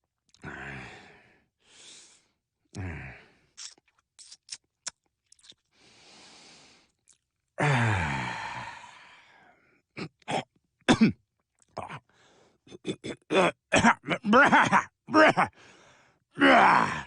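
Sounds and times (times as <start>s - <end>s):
man groaning sigh: 0.4s - 1.1s, 2.7s - 3.3s, 7.6s - 9.2s, 16.4s - 17.0s
man grunting: 2.8s - 3.2s, 12.9s - 15.6s, 16.4s - 17.0s
mouth clicks: 3.6s - 5.6s
breathy exhale: 5.8s - 6.9s.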